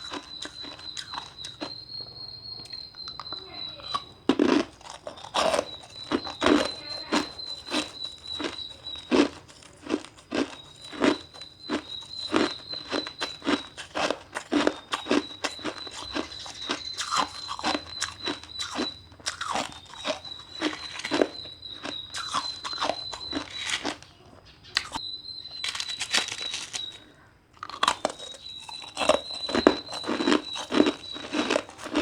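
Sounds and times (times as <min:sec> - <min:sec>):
ice being chewed: 0:00.0 - 0:32.0.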